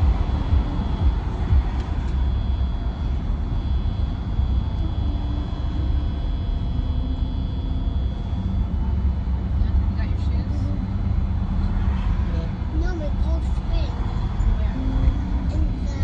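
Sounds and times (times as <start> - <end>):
faint high whine: 0.0 - 11.3
van road and engine rumble: 0.0 - 16.0.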